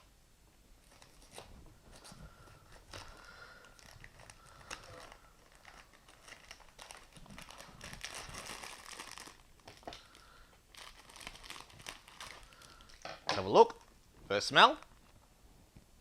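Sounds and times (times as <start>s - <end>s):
plastic packet crinkling and tearing: 0.8s - 13.1s.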